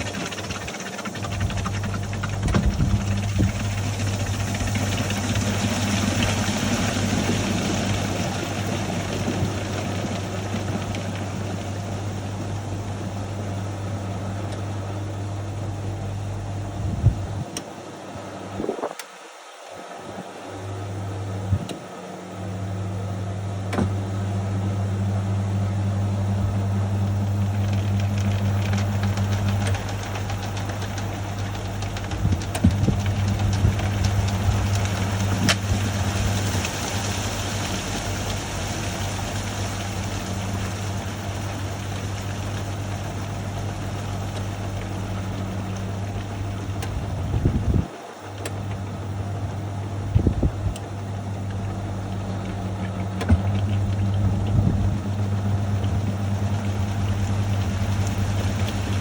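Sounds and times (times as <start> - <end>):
washing machine motor hum: 0.0 - 59.0
water swishing: 27.3 - 47.2.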